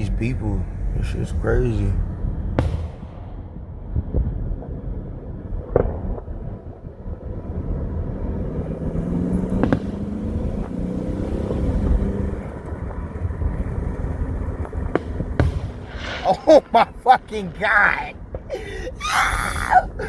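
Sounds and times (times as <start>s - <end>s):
car engine rumble inside car: 0.0s - 15.9s
sharp bangs: 2.4s - 4.4s, 14.9s - 18.5s.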